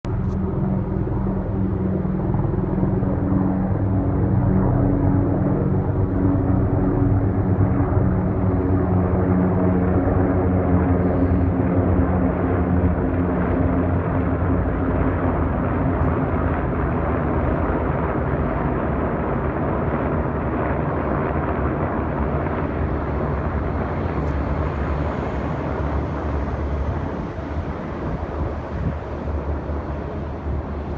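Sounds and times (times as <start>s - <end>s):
helicopters flying overhead: 0.0s - 30.9s
low hum: 0.0s - 30.9s.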